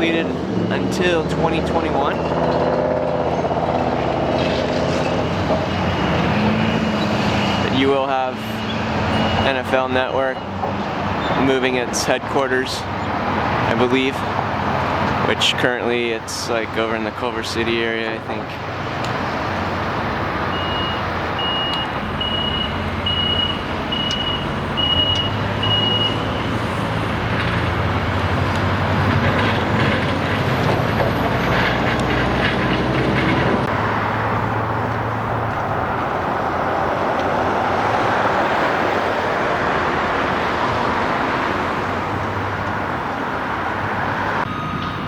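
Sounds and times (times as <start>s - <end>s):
heavy vehicle engine and traffic: 0.0s - 45.0s
reversing alarm beeping: 5.2s - 7.8s, 8.4s - 9.7s, 10.3s - 10.6s, 20.5s - 26.6s.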